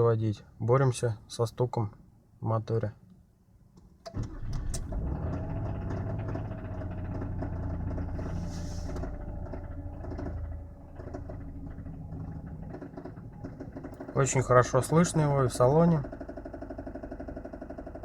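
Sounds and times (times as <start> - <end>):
car engine starting and idling: 3.9 - 18.0
engine knocking: 4.2 - 18.0.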